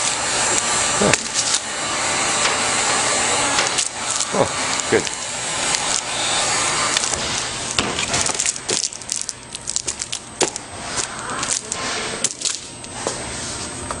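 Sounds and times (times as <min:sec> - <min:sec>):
plastic film crinkling: 0:03.6 - 0:06.1, 0:06.9 - 0:12.8.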